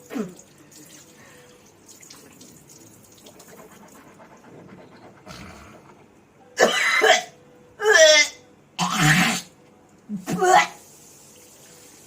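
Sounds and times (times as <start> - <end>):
person breathing: 1.0 - 1.7
toothbrush scrubbing: 3.0 - 6.1.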